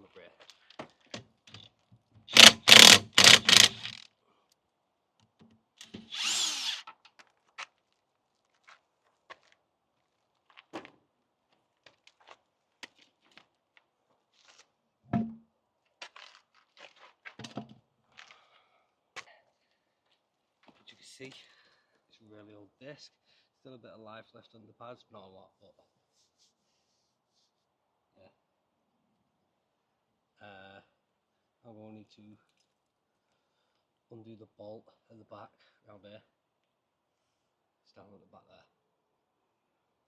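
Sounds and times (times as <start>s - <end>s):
clicks of parts handled: 2.3s - 4.0s
power tool bursts: 2.3s - 4.0s, 5.8s - 6.8s.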